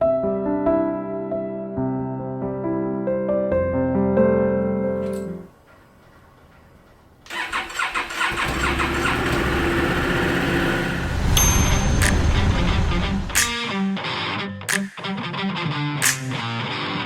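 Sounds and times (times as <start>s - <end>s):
soft piano music: 0.0s - 5.6s
motorcycle engine starting and rumbling: 7.3s - 11.4s.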